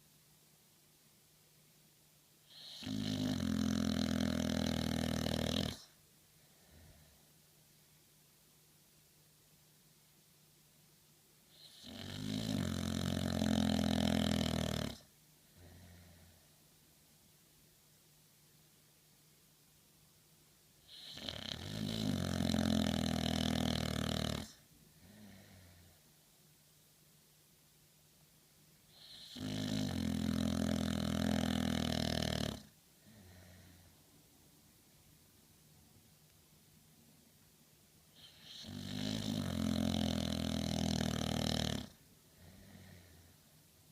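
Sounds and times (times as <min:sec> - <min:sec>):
dog snoring: 0:02.4 - 0:06.0, 0:11.5 - 0:16.4, 0:20.8 - 0:26.0, 0:28.9 - 0:33.9, 0:38.1 - 0:43.4
faint breath: 0:06.3 - 0:07.4, 0:15.5 - 0:16.6, 0:24.9 - 0:26.2, 0:33.0 - 0:34.1, 0:42.2 - 0:43.6.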